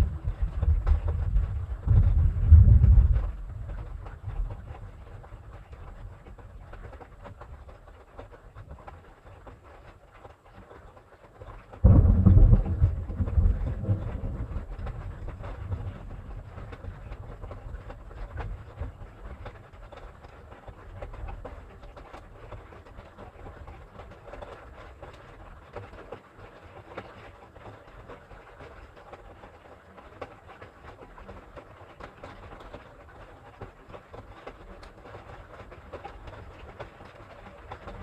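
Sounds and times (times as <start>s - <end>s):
thunderclap rolling into rumble: 0.0s - 6.7s, 11.8s - 19.7s
faint thunder rumbles: 0.0s - 7.7s, 11.8s - 21.9s.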